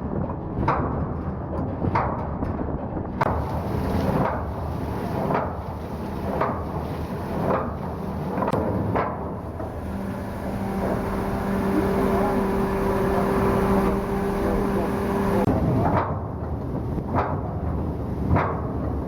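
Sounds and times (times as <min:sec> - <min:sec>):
engine room machinery hum: 0:03.2 - 0:17.0.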